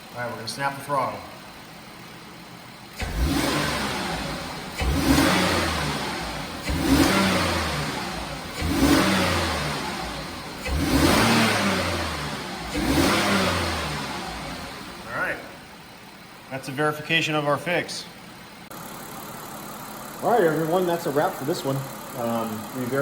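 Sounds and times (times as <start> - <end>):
car engine revving: 2.9 - 16.4.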